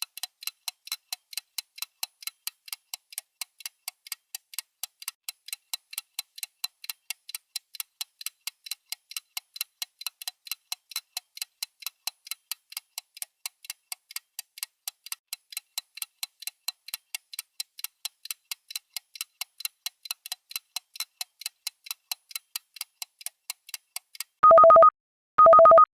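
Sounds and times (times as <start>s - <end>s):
synthetic clock ticking: 0.0s - 25.9s
electronic alarm beep: 24.4s - 25.9s.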